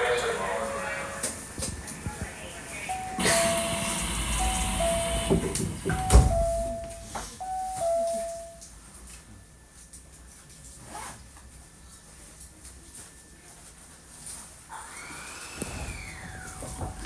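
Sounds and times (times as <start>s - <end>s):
quiet train interior hum: 0.0s - 14.7s, 15.6s - 17.0s
doors shutting thud: 2.9s - 7.9s, 15.7s - 17.0s
two-note door chime: 2.9s - 8.7s.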